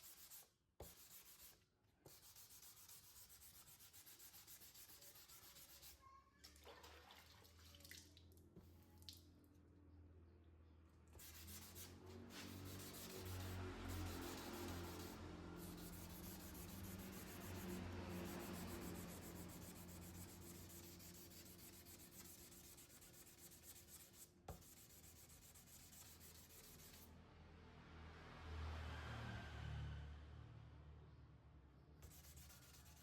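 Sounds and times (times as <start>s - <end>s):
sandpaper rubbing: 0.0s - 5.9s, 11.2s - 27.0s, 32.0s - 33.0s.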